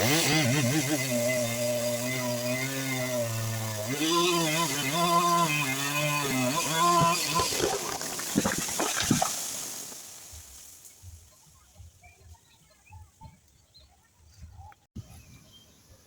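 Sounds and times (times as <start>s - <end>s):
rush of branches and leaves: 6.7s - 11.6s
wood cracking and snapping: 6.9s - 10.1s.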